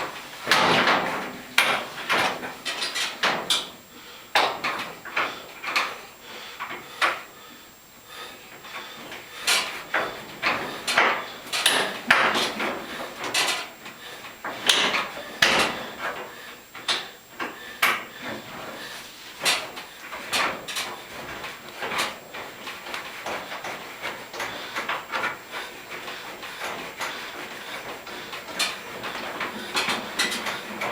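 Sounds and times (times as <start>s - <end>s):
tools and metal parts clattering: 28.4s - 30.9s.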